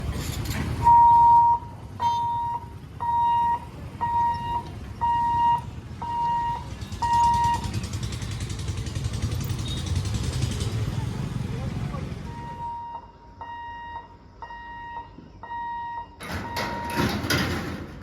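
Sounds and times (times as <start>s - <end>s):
level crossing warning beeps: 0.8s - 7.8s, 12.2s - 17.3s.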